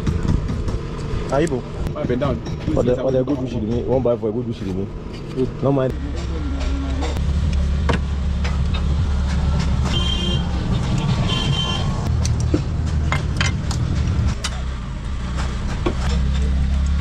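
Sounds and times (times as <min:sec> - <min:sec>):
engine humming: 0:00.0 - 0:17.0
metallic clicks and knocks: 0:12.0 - 0:17.0.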